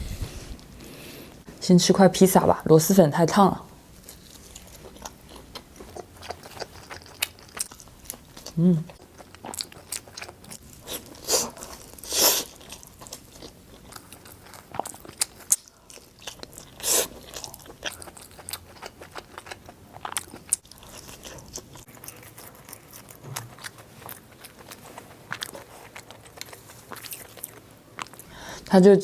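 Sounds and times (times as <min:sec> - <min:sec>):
person biting and chewing pizza: 0:04.0 - 0:28.2.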